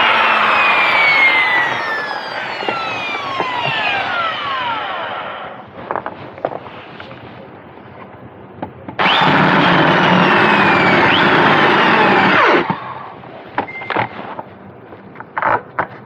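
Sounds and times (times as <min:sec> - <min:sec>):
power drill boring a hole: 0:00.0 - 0:05.6, 0:09.0 - 0:12.8.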